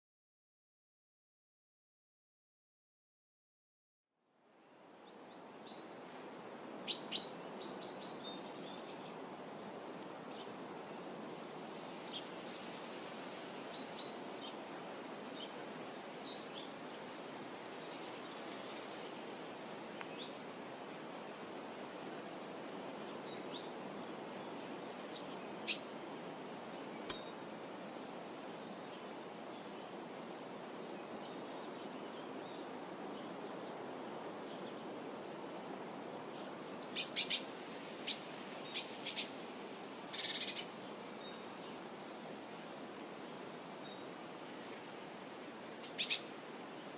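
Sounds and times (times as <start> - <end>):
small birds chirping: 22.1 - 26.0, 26.6 - 41.9, 42.7 - 44.9, 45.6 - 46.9.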